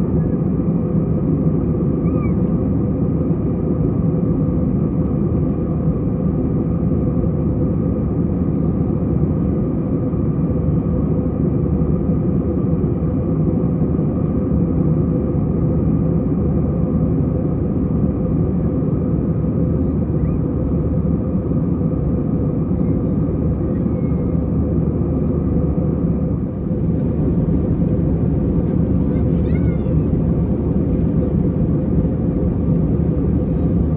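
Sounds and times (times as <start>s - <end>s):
jet engines and airflow rumble: 0.0s - 33.9s
steady tonal hum: 22.3s - 33.9s.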